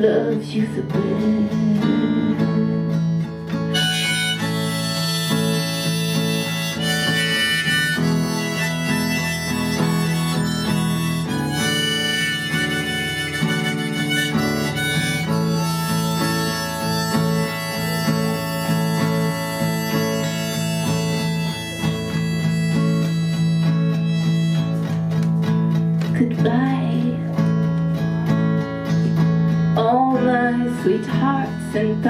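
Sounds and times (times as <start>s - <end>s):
acoustic guitar accompaniment: 0.0s - 32.0s
harmonica playing: 3.7s - 25.4s.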